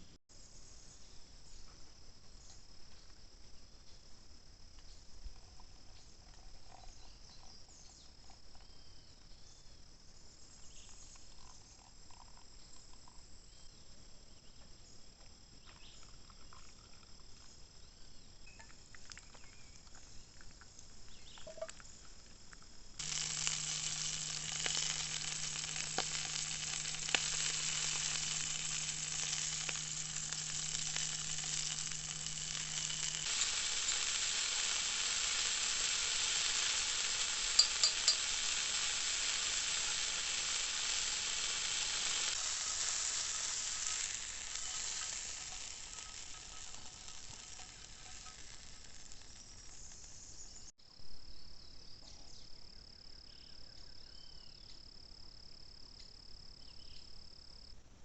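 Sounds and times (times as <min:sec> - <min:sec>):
crickets chirring: 0:00.0 - 0:57.7
food sizzling in frying: 0:18.6 - 0:50.6
low steady hum: 0:22.4 - 0:50.7.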